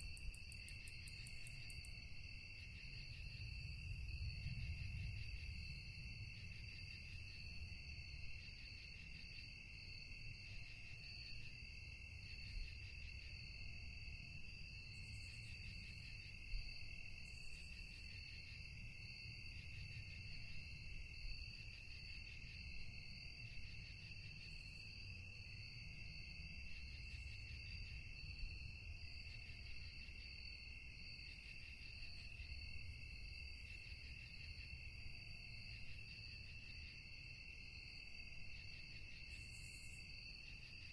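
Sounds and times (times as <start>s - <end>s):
crickets chirping: 0.0s - 40.9s.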